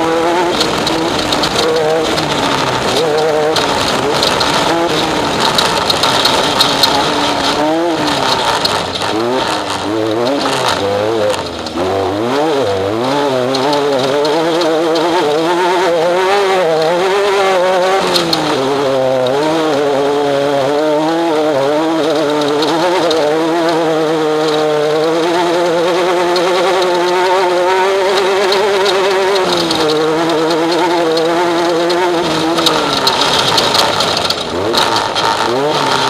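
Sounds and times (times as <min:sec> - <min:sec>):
race vehicle engine revving: 0:00.0 - 0:36.0.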